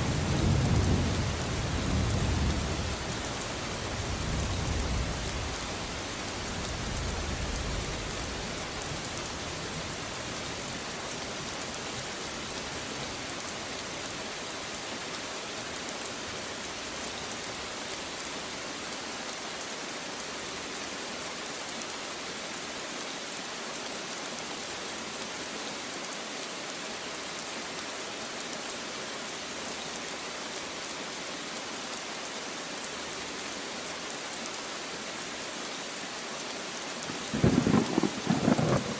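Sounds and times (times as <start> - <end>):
low rumble of thunder: 0.0 - 3.2, 37.1 - 38.9
steady rain falling: 0.0 - 38.9.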